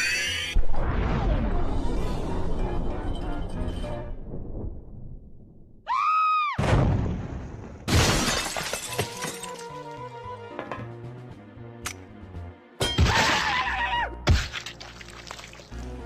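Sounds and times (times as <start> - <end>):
music: 0.0 - 4.6, 8.7 - 16.0
glass shattering: 7.9 - 9.8.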